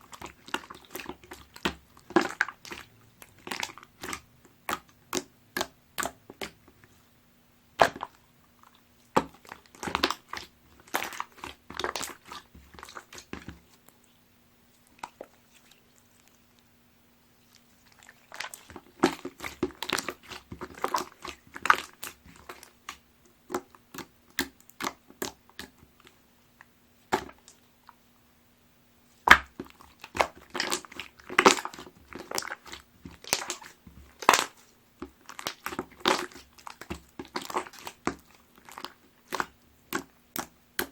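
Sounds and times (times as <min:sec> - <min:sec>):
slime squishing with wet clicks: 0:00.0 - 0:07.0, 0:07.8 - 0:14.2, 0:14.8 - 0:16.7, 0:17.4 - 0:28.0, 0:29.2 - 0:40.9.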